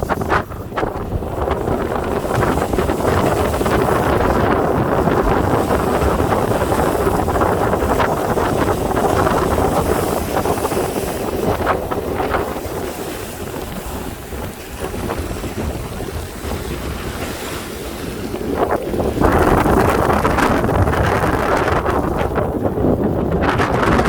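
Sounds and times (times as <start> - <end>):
sea water sloshing: 0.0 - 24.0
wind buffeting microphone: 0.0 - 24.0.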